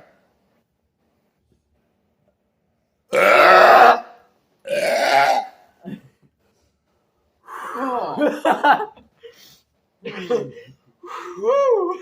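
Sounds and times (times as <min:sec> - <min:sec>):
loud burps: 0:03.1 - 0:06.0.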